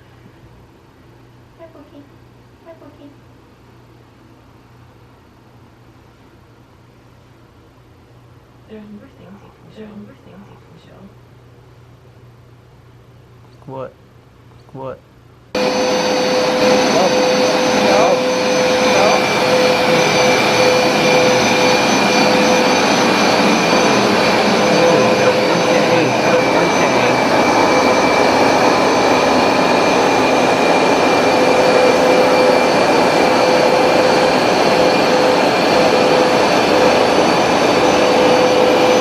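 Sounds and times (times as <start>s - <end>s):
steady high whine: 15.4s - 39.0s
carpet cleaner motor and suction: 15.6s - 39.0s.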